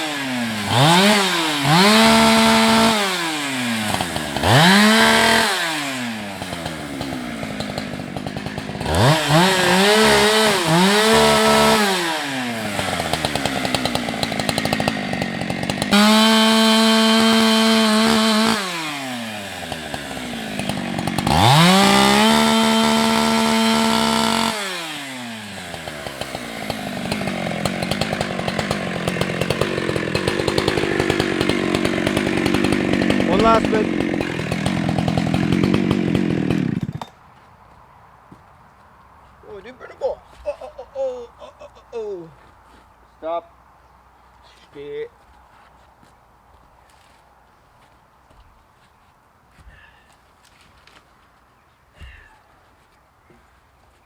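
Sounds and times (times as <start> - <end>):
chainsaw revving and idling: 0.0 - 37.2.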